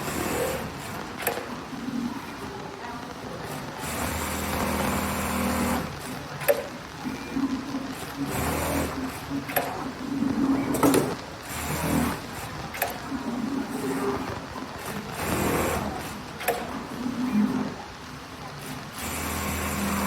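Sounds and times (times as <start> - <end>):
sewing machine stitching: 0.0 - 2.0, 3.4 - 17.8, 18.6 - 20.0
sewing machine mechanism clicks: 0.9 - 1.5.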